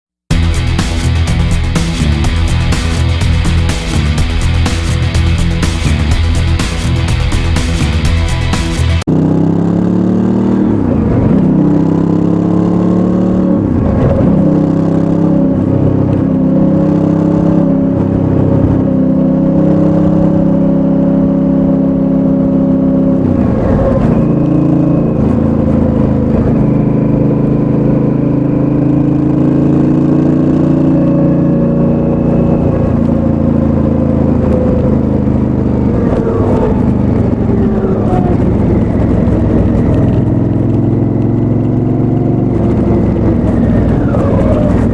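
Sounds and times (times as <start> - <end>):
motorcycle engine running: 0.3 - 13.8, 24.1 - 44.9.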